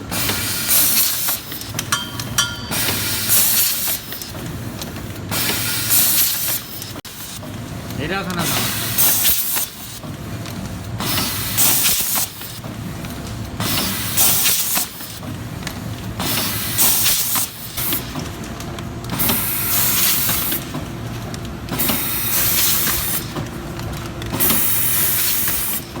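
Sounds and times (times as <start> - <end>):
packing machine humming: 17.6 - 26.0.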